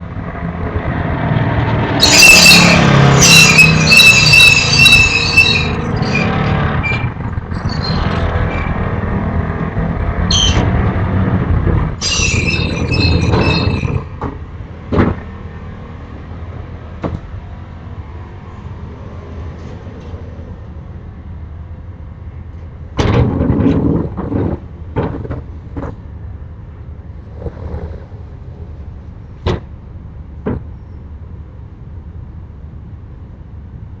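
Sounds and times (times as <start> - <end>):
high squeal: 2.0 - 9.0, 10.2 - 10.8, 12.0 - 14.2
steady low rumble: 5.7 - 12.0
sharp knocks: 14.0 - 15.3, 29.4 - 29.7, 30.4 - 30.7.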